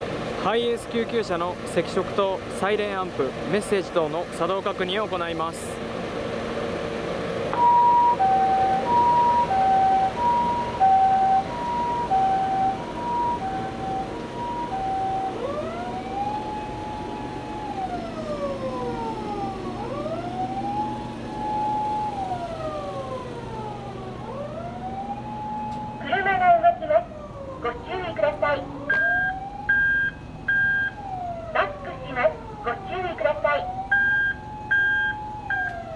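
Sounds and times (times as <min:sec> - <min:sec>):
ambulance siren: 0:07.5 - 0:35.9.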